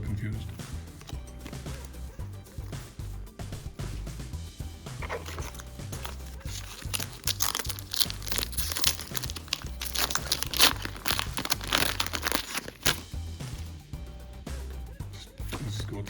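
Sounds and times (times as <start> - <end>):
background music with bass line: 0.0 - 16.0
foil wrapper crinkling and tearing: 5.0 - 13.6.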